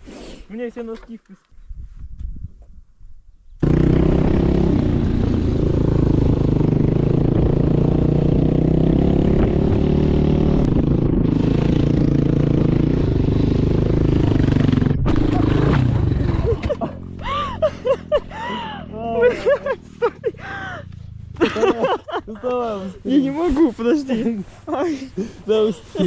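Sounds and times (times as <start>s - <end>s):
vehicle engine revving high: 3.6s - 18.9s.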